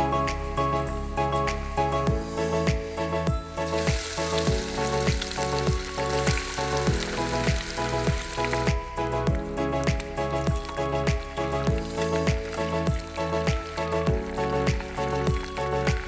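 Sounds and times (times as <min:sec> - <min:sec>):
background music with a beat: 0:00.0 - 0:16.0
chicken sizzling in hot oil: 0:03.7 - 0:08.7.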